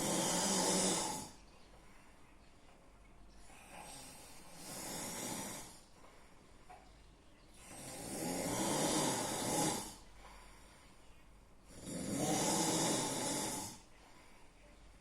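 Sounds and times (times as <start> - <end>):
person snoring loudly: 0.0 - 1.4, 4.6 - 5.8, 7.7 - 10.0, 11.7 - 13.8
quiet breathing: 0.0 - 15.0.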